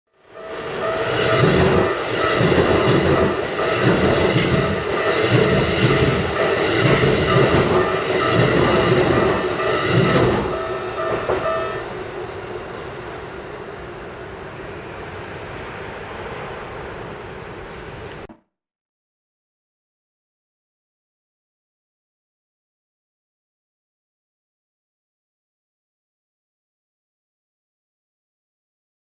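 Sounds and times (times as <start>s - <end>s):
level crossing warning bell: 0.2s - 12.2s
train wheels clacking over rail joints: 1.2s - 11.8s.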